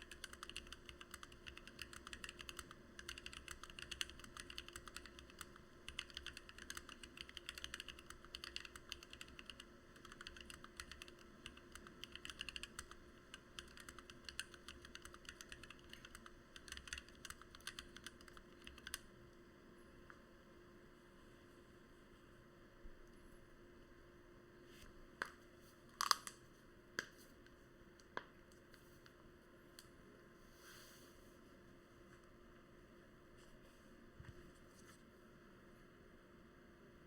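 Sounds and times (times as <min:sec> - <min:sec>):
mechanical keyboard typing: 0:00.0 - 0:19.0.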